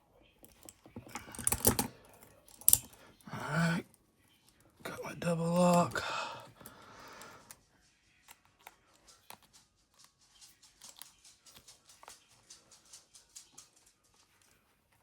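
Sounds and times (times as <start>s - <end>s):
lock pick clicks and scrapes: 0.5s - 1.9s, 2.5s - 3.0s.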